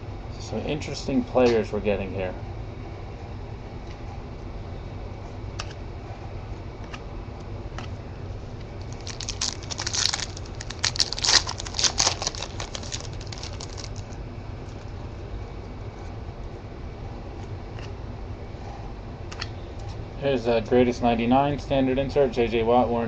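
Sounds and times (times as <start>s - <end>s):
wrapper crinkling and crackling: 8.8s - 14.9s.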